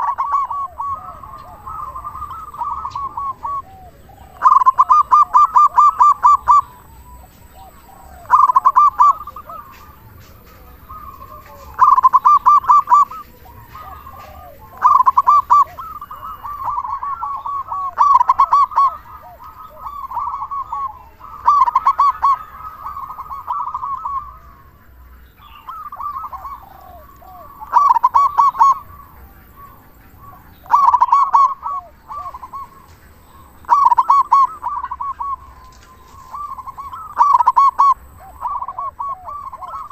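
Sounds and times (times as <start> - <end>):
dove cooing: 0.0 - 39.9.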